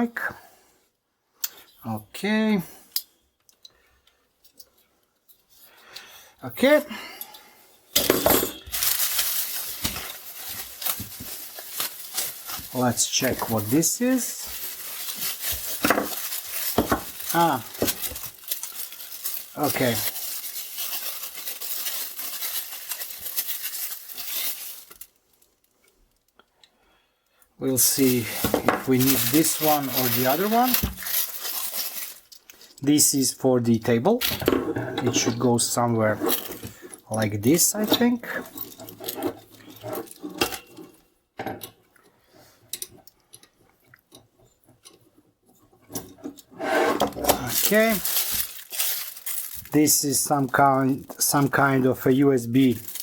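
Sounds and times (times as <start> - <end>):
plastic packaging crinkling: 8.0 - 26.2, 27.7 - 33.1, 35.6 - 40.7, 47.0 - 53.0.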